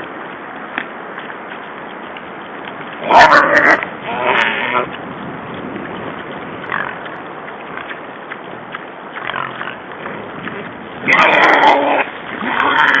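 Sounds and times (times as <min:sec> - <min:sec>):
wild boars squeaking: 0:03.0 - 0:04.9, 0:11.0 - 0:13.0.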